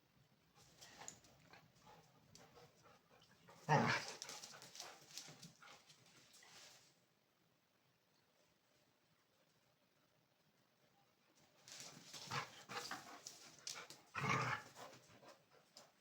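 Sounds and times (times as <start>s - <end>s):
dogs scuffling: 3.7s - 6.8s, 11.6s - 14.7s.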